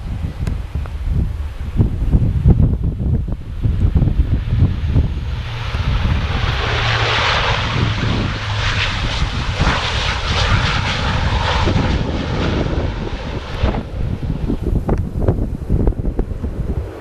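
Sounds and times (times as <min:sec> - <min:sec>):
airliner engines rushing: 0:00.0 - 0:17.0
steady low hum: 0:00.5 - 0:17.0.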